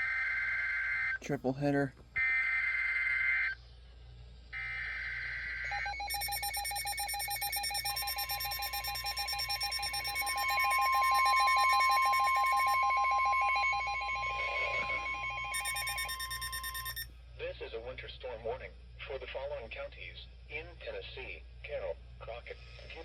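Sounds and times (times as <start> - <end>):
rapidly pulsing alarm tone: 4.8 - 17.1
steady high tone: 5.7 - 17.0
screeching digital data burst: 6.1 - 17.0.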